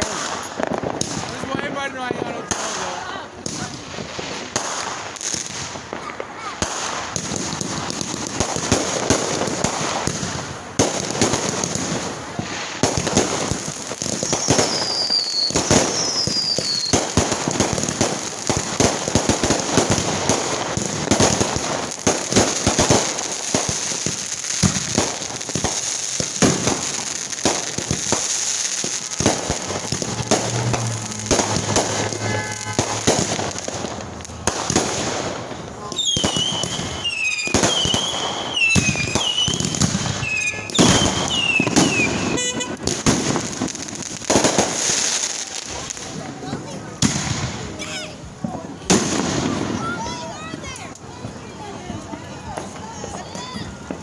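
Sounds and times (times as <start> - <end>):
fireworks crackling and banging: 0.0 - 54.0
falling whistles: 36.0 - 42.6.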